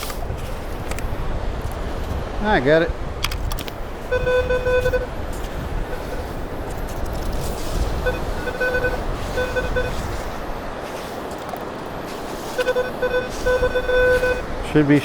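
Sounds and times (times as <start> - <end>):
metal detector beeps: 4.1 - 5.2, 5.8 - 11.1, 11.9 - 14.6.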